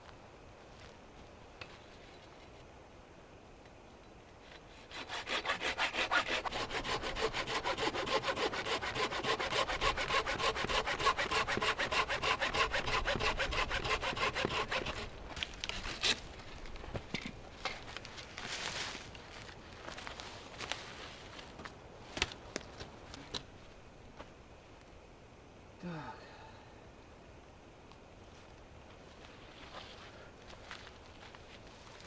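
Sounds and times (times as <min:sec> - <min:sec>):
hand saw cutting wood: 0:04.8 - 0:15.2.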